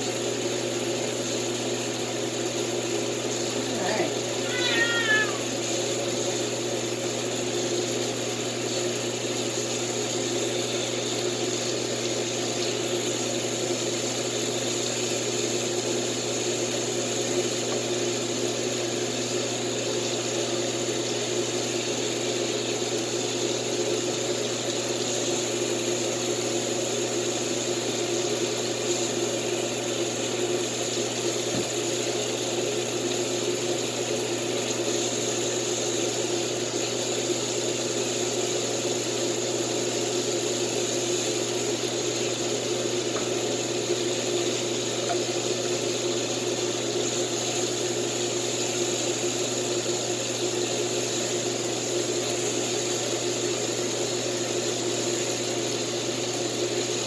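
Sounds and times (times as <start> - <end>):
running bath water: 0.0 - 57.0
pet's short falling cry: 4.0 - 5.5.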